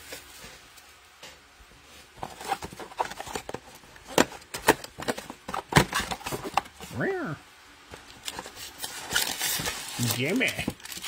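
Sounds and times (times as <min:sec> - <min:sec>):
plastic wrap crinkling: 0:08.0 - 0:11.0
cardboard tearing: 0:08.2 - 0:11.0.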